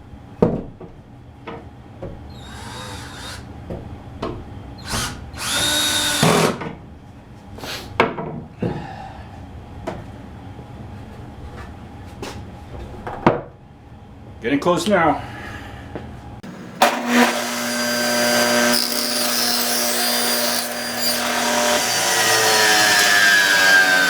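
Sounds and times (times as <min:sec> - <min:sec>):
workshop knocks and clatter: 0:00.4 - 0:02.2, 0:03.6 - 0:04.5, 0:08.0 - 0:08.8, 0:12.3 - 0:13.5
power drill running: 0:02.4 - 0:03.4, 0:04.9 - 0:06.6, 0:16.4 - 0:24.0.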